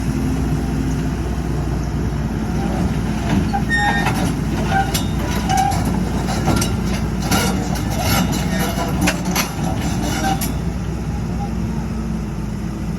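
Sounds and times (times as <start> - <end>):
diesel engine running: 0.0 - 12.9
short squeaks: 3.4 - 10.6.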